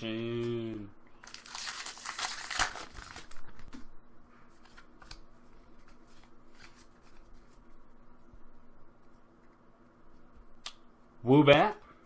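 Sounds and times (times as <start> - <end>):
wrapper crinkling as torn open: 1.2 - 3.4
cards handled with light clicks: 4.6 - 5.2.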